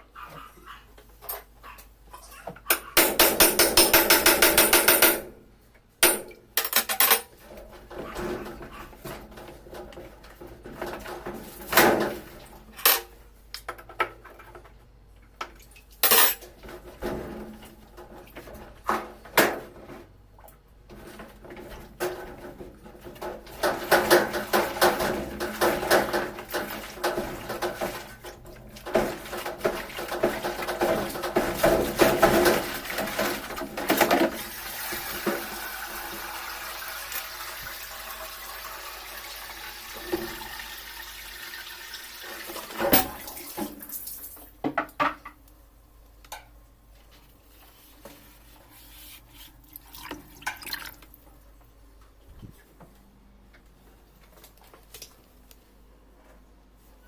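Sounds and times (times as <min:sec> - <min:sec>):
parts knocking and clattering: 0:02.5 - 0:05.4, 0:06.0 - 0:12.2, 0:20.9 - 0:28.0.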